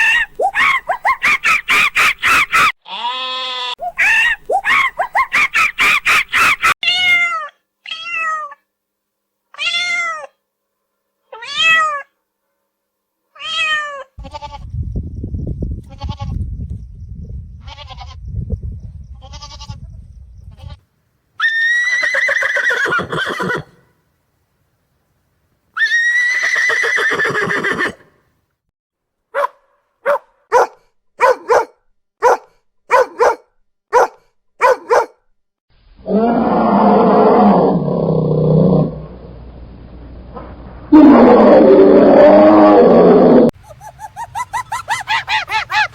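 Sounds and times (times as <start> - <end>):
long drawn-out animal calls: 1.7 - 7.5
farm animal bleating: 2.8 - 3.8, 13.5 - 14.7, 15.8 - 16.4, 17.6 - 18.2, 19.2 - 19.8, 20.5 - 20.8
low rumbling: 14.6 - 20.8, 36.0 - 43.8.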